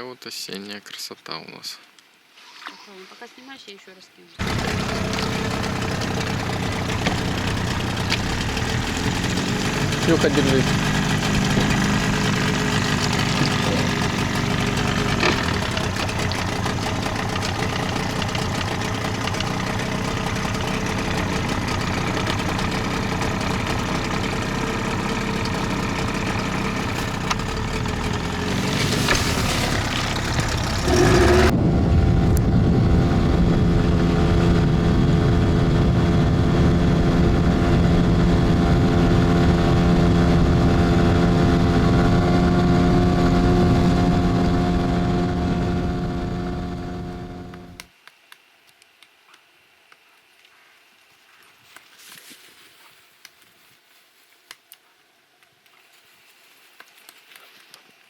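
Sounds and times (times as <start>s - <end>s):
outboard engine running: 4.4s - 47.8s
water wash: 28.4s - 31.5s.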